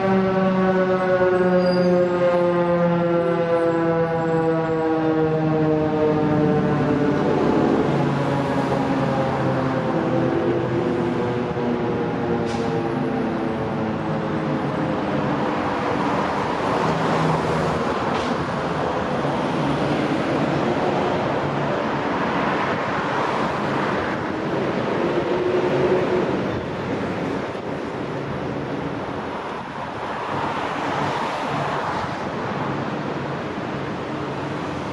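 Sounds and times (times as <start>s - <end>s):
siren growl winding down: 0.0s - 21.6s
city road traffic: 0.0s - 34.9s.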